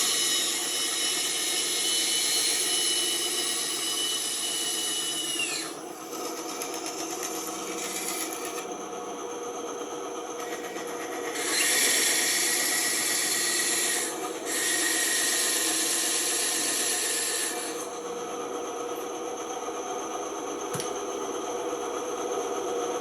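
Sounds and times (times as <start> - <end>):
band saw humming: 0.0 - 8.7
saw blade cutting wood: 0.0 - 8.7, 10.4 - 17.9.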